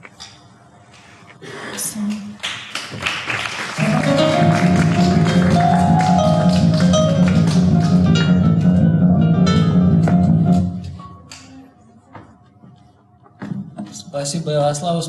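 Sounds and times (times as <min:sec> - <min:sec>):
strummed acoustic guitar chords: 0:03.8 - 0:10.8.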